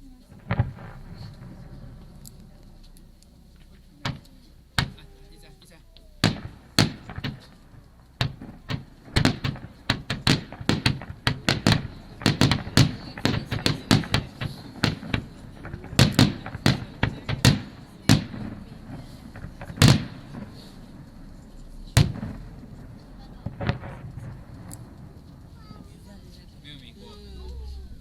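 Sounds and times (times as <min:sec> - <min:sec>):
fireworks bangs: 0:00.0 - 0:27.7.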